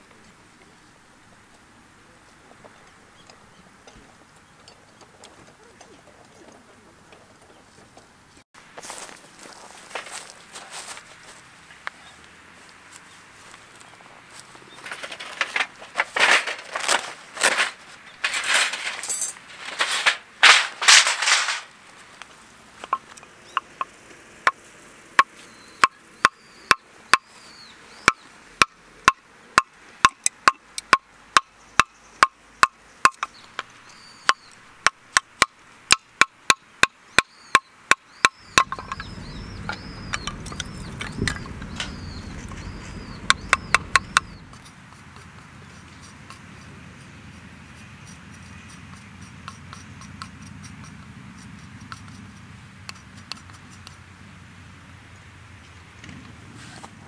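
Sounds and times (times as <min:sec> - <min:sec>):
small birds chirping: 0:00.0 - 0:56.3
rough wood strokes: 0:12.6 - 0:25.5, 0:38.3 - 0:54.1
sharp clicks and knocks: 0:37.9 - 0:46.7
low steady rumble: 0:38.4 - 0:53.2.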